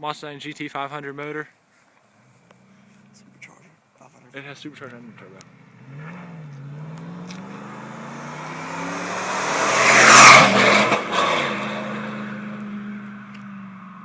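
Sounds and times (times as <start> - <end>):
pickup truck accelerating past: 5.5 - 14.0.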